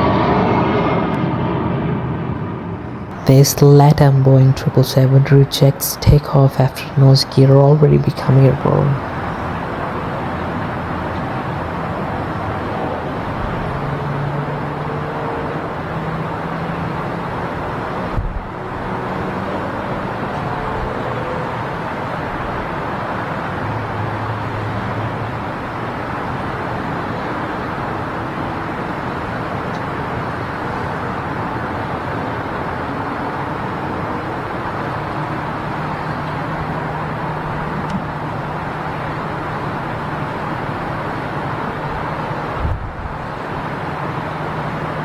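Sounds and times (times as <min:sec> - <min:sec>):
jet engines rushing: 0:00.0 - 0:07.7.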